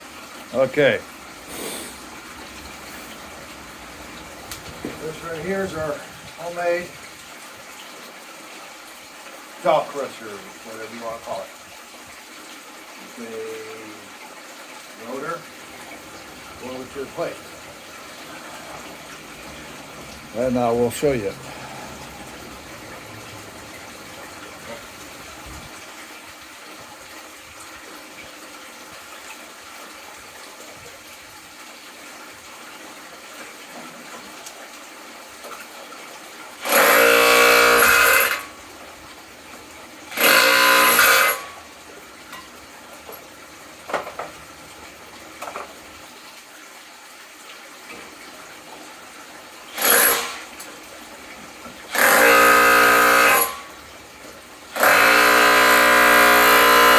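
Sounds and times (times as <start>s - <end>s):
impact drill whining: 36.7s - 38.4s, 40.2s - 41.5s, 51.9s - 53.7s, 54.8s - 56.9s
ore grinding: 36.7s - 38.5s, 40.2s - 41.6s, 49.8s - 50.5s, 51.9s - 53.7s, 54.8s - 56.9s.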